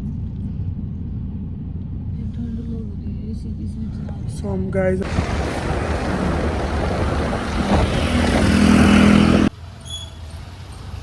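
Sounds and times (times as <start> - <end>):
vehicle engine: 0.0 - 11.0
rushing wind and road noise: 5.0 - 11.0.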